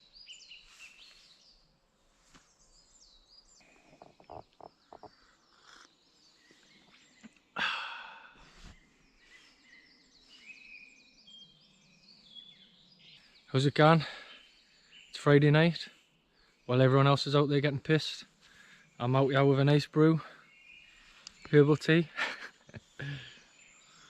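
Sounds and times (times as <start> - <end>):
small birds chirping: 0.0 - 24.0.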